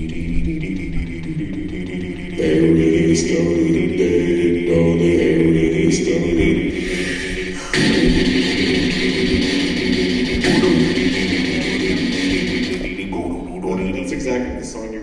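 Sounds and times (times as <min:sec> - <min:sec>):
a cappella chant-like singing: 0:00.0 - 0:15.0.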